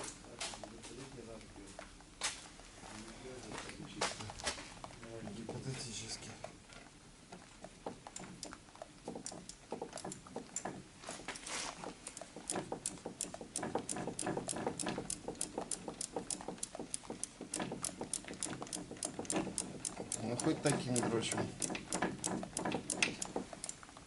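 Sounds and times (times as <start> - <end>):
ratchet wrench clicking: 12.0 - 23.8.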